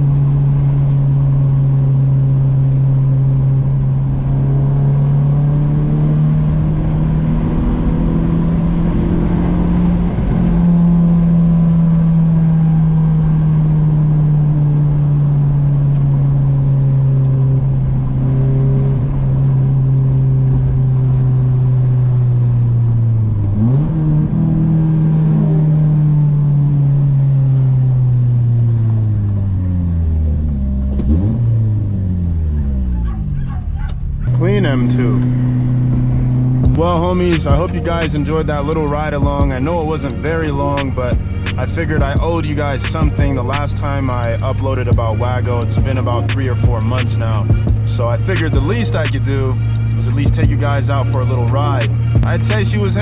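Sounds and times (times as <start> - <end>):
car engine running while driving: 0.0 - 53.0.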